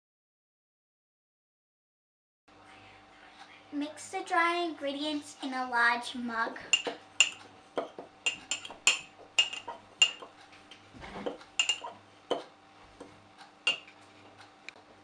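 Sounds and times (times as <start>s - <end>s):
spoon clinking against mug: 6.7s - 10.3s, 11.6s - 12.0s, 13.7s - 13.9s.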